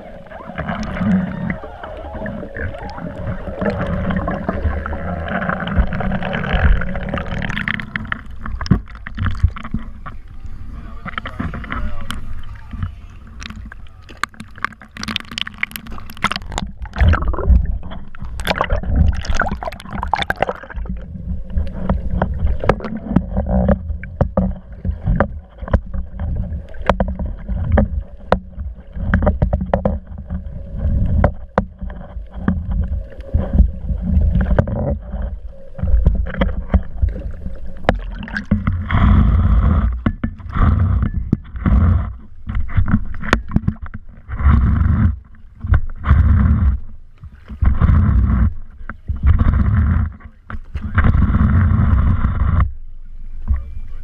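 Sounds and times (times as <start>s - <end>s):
water sloshing around boat: 0.0s - 54.0s
steady low rumble: 15.8s - 54.0s.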